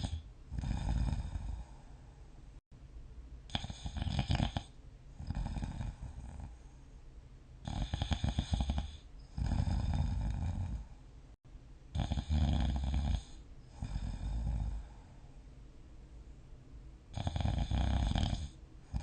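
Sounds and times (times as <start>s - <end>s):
person snoring: 0.0s - 2.0s, 3.5s - 6.7s, 7.6s - 11.0s, 11.9s - 15.2s, 17.1s - 19.0s.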